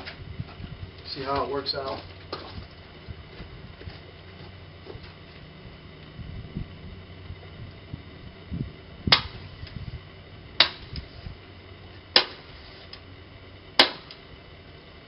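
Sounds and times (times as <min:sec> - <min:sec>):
handgun shots: 0:13.8 - 0:14.2.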